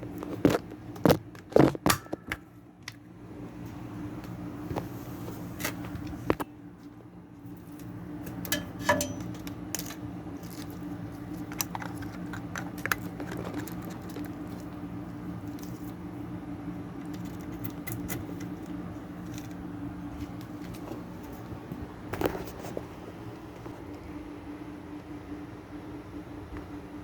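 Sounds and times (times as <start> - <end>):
steady low hum: 0.0 - 27.0
metal parts and tools clicking: 8.5 - 10.0.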